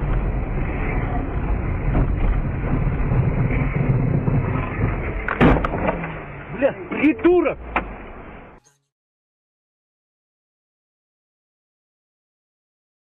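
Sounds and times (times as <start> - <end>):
car road and engine noise: 0.0 - 8.6.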